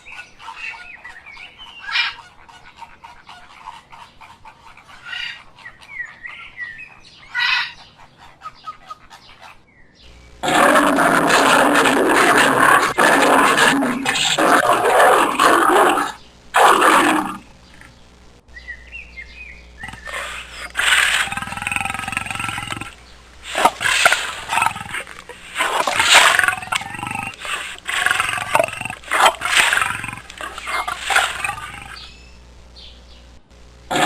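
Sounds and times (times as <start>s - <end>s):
big cat roaring: 10.4s - 17.5s, 19.8s - 32.0s.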